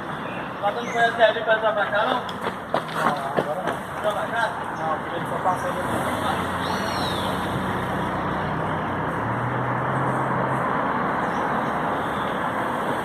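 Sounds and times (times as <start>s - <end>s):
road noise hiss: 0.0s - 13.0s
vehicle engine humming: 1.9s - 13.0s.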